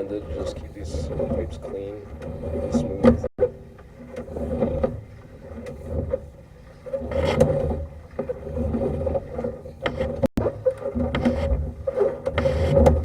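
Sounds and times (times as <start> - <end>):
cable rumbling in drain pipe: 0.0 - 13.0.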